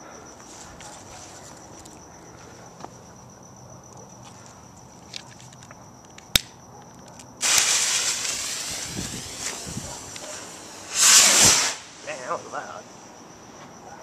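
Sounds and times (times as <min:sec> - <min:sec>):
crickets chirping: 0:00.0 - 0:14.0
rocket whoosh: 0:07.4 - 0:12.5
loud firework crackling: 0:07.4 - 0:12.6.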